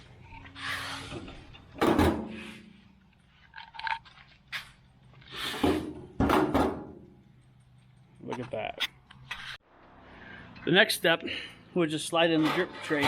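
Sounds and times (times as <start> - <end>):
metal parts scraping and clanking: 0.2 - 6.0, 7.6 - 9.6, 12.2 - 13.0.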